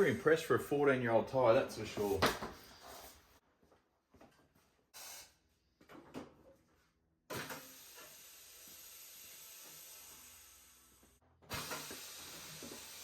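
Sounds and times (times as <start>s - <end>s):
compressed air hissing: 7.6s - 13.0s.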